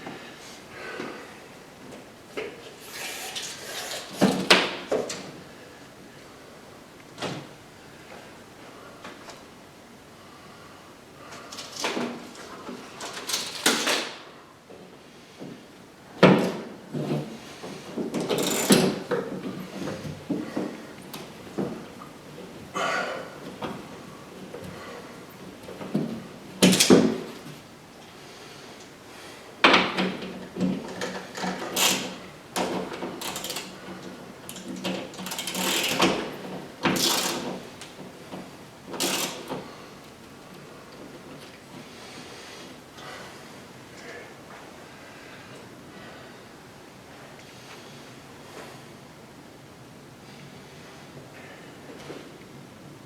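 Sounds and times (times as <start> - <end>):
knocks and clatters of hardware: 18.0 - 21.8, 25.7 - 27.4, 29.6 - 39.6.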